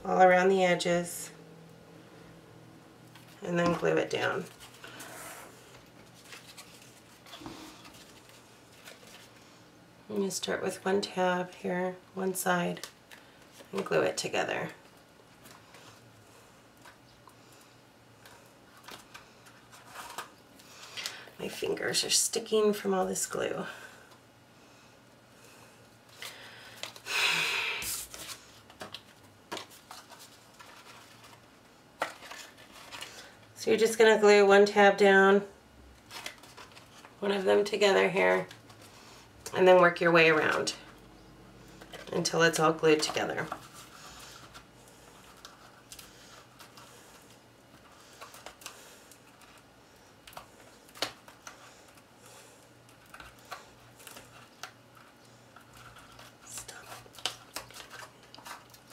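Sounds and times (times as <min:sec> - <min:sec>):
paper rustling: 0:03.2 - 0:09.6, 0:16.8 - 0:21.6, 0:27.8 - 0:33.4, 0:36.0 - 0:37.2, 0:52.9 - 0:58.9.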